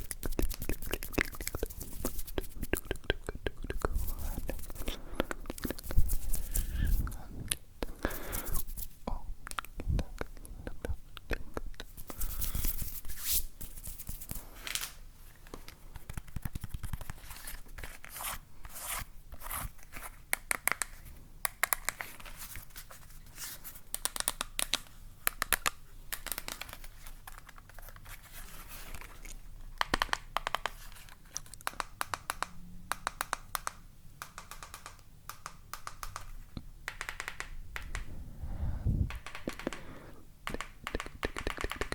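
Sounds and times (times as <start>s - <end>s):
scratching and crinkling objects: 26.2s - 29.5s
quick taps and clicks: 31.6s - 38.1s, 39.0s - 41.9s.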